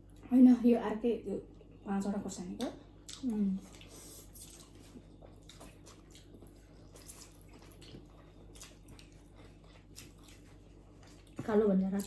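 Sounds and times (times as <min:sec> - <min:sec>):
wet chewing and slurping: 0:02.6 - 0:12.0.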